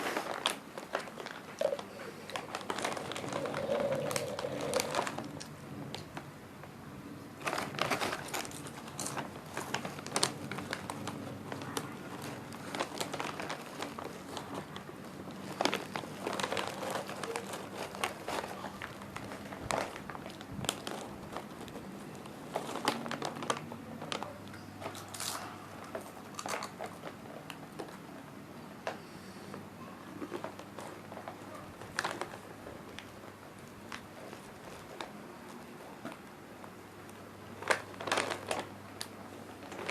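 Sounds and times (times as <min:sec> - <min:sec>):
crinkling: 0:00.0 - 0:29.0, 0:29.9 - 0:39.9
person chewing crunchy snacks: 0:01.6 - 0:05.5, 0:24.8 - 0:25.5, 0:26.3 - 0:27.5.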